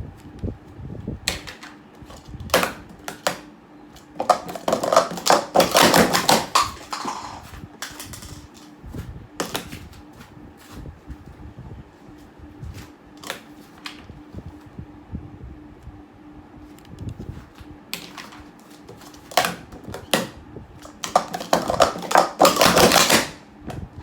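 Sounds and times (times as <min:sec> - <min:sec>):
plastic cups clacking: 0:01.3 - 0:03.5, 0:04.1 - 0:08.7, 0:09.4 - 0:09.9, 0:13.2 - 0:14.0, 0:18.0 - 0:23.4.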